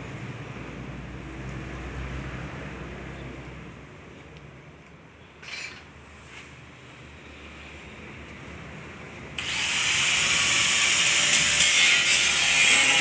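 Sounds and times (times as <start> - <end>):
power tool hissing: 9.4 - 13.0.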